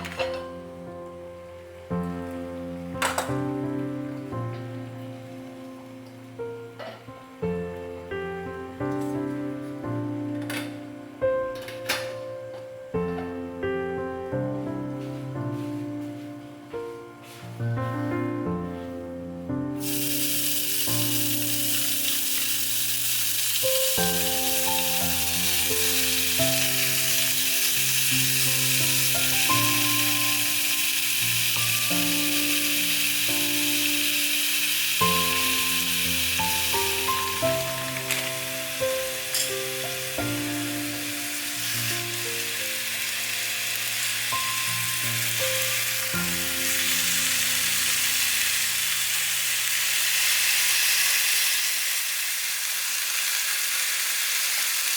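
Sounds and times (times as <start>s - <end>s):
background music: 0.0s - 50.3s
food sizzling in a frying pan: 19.7s - 54.9s.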